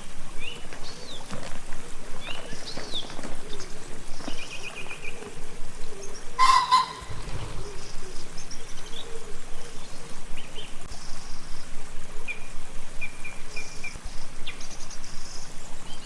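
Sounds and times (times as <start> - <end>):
small birds chirping and trilling: 0.0 - 16.0
lower bird call: 2.2 - 11.5.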